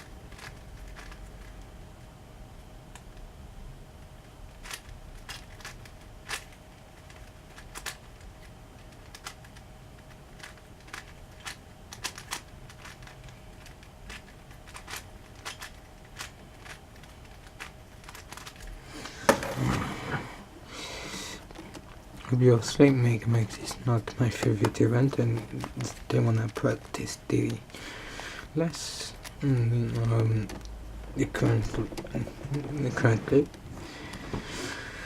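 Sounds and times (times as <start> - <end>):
puzzle cube turning clicks: 0.0 - 1.7, 4.6 - 19.3, 23.4 - 27.8, 28.6 - 30.7.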